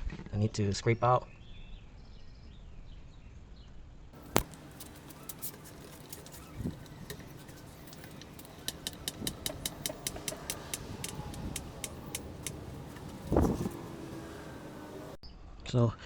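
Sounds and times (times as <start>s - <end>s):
sharp light clicks: 4.2s - 15.2s.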